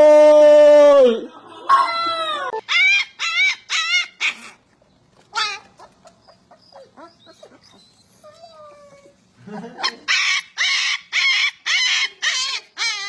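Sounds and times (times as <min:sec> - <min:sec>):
animal yelping: 0:02.2 - 0:04.6, 0:05.3 - 0:09.2, 0:09.8 - 0:13.0.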